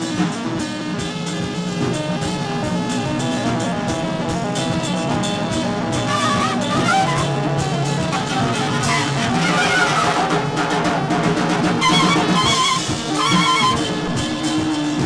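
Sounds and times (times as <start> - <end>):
jazz ensemble horns and drums: 0.0 - 15.0
high-pitched wavering brass line: 6.1 - 7.4, 11.8 - 14.2.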